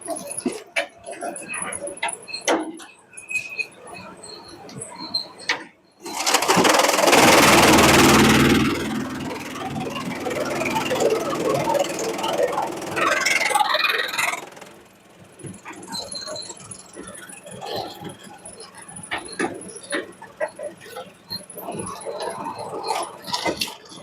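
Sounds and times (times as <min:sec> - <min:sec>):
shredder machine running: 0:06.1 - 0:15.6.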